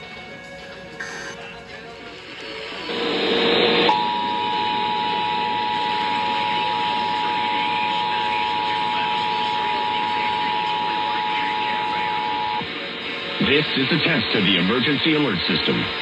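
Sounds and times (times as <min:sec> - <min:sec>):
two-tone alert signal: 0:01.0 - 0:01.4
radio hiss: 0:01.0 - 0:16.0.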